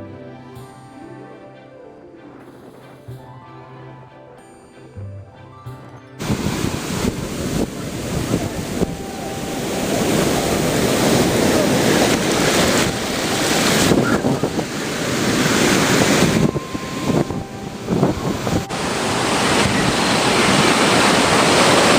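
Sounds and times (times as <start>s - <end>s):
surf washing onto beach: 6.2s - 21.9s
wind buffeting microphone: 6.2s - 21.9s.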